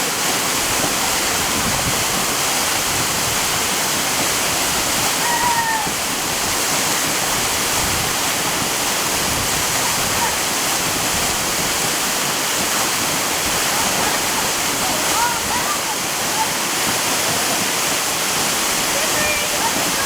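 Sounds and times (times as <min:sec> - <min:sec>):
waterfall rushing: 0:00.0 - 0:20.0.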